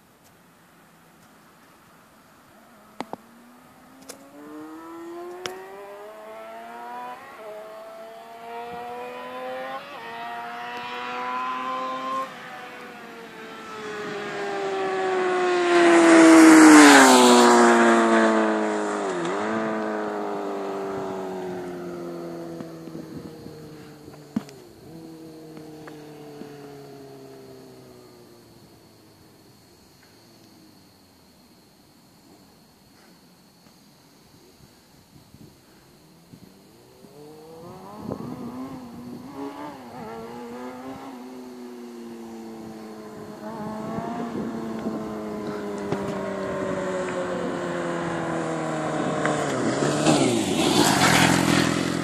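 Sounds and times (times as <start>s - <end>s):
motorcycle accelerating past: 2.8s - 29.6s, 36.0s - 52.0s.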